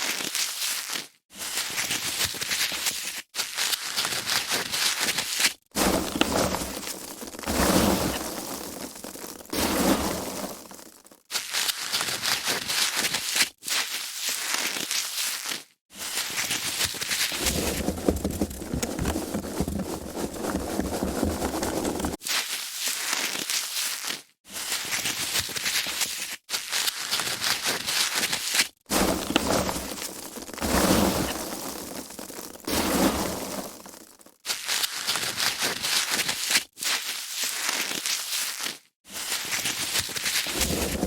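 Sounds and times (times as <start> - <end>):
foam packaging crinkling: 0.0 - 41.0.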